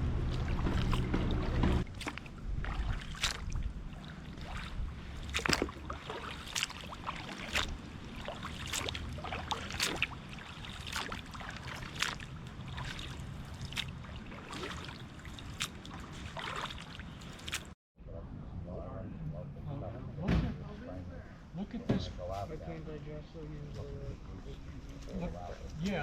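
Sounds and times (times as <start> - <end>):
low rumble: 0.0 - 5.4
paddle splashing in water: 0.0 - 17.8
water trickling: 0.0 - 17.8.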